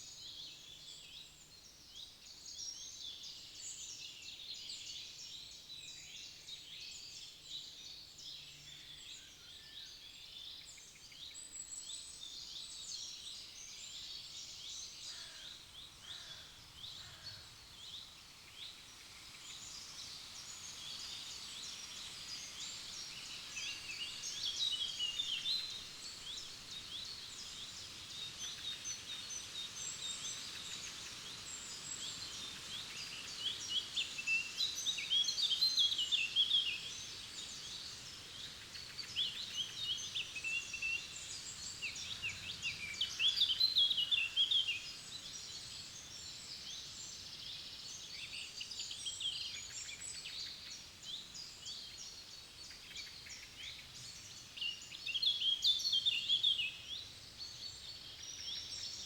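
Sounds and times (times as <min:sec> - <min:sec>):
songbirds singing: 0:00.0 - 0:59.0.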